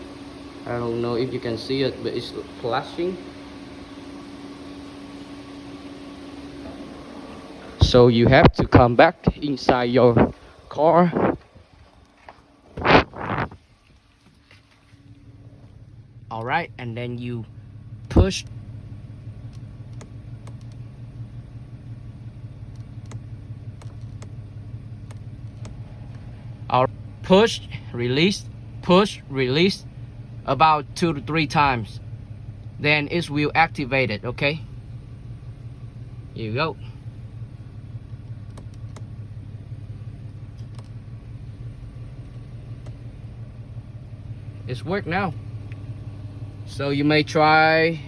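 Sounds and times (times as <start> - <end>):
car engine idling: 0.0 - 48.0
faint clicks: 19.4 - 20.8, 22.7 - 24.4, 25.0 - 26.4, 38.4 - 39.2, 40.2 - 41.0.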